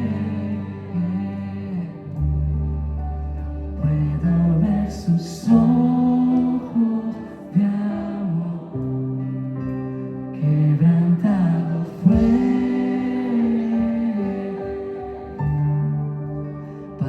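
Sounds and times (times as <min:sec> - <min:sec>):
electric bass line: 0:00.0 - 0:06.6, 0:10.5 - 0:14.4
keyboard and guitar chords: 0:00.0 - 0:17.0
drums: 0:12.1 - 0:12.7.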